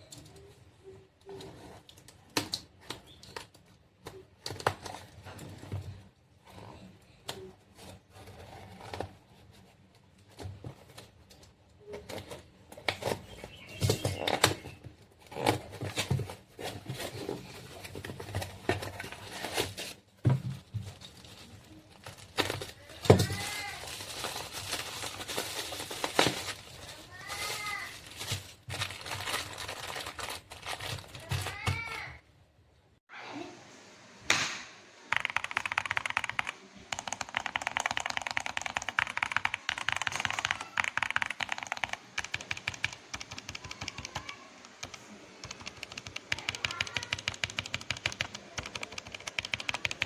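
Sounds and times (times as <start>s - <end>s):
keyboard switches clicking: 35.1s - 50.0s.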